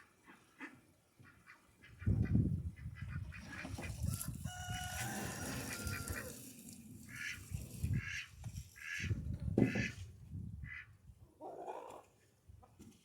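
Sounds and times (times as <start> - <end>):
waterfowl calling: 4.7 - 6.4.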